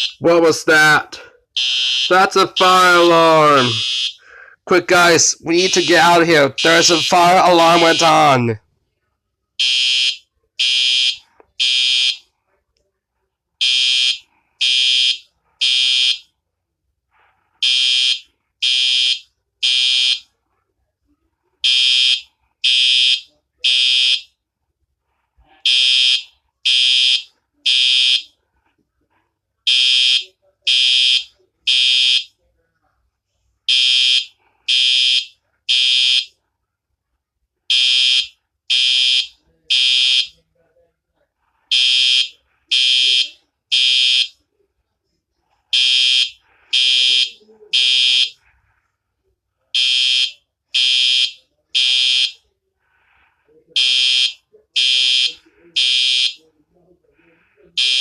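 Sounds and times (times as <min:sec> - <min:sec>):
fire alarm beeping: 0:00.0 - 0:00.3, 0:01.6 - 0:04.2, 0:05.4 - 0:08.4, 0:09.6 - 0:12.2, 0:49.8 - 0:52.4, 0:53.8 - 0:56.4, 0:57.8 - 0:58.0.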